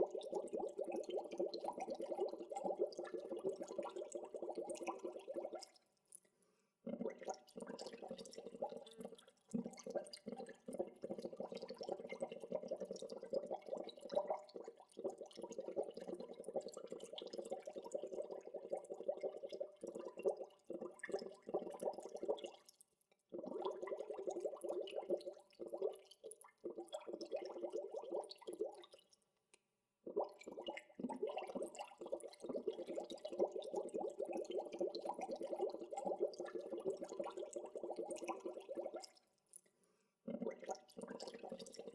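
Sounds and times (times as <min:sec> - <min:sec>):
water bubbling: 0:30.1 - 0:39.1.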